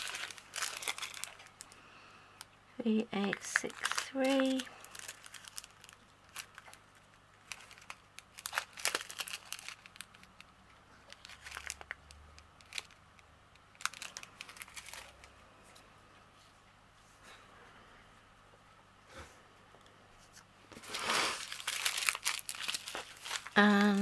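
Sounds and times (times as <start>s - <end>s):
plastic bags crinkling: 0.0s - 1.9s, 2.8s - 15.4s, 20.7s - 24.0s.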